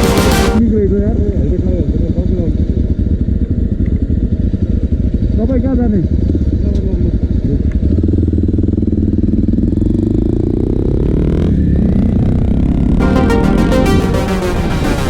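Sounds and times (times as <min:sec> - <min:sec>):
electronic music: 0:00.0 - 0:00.6, 0:13.0 - 0:15.0
motorcycle engine revving: 0:02.5 - 0:13.0.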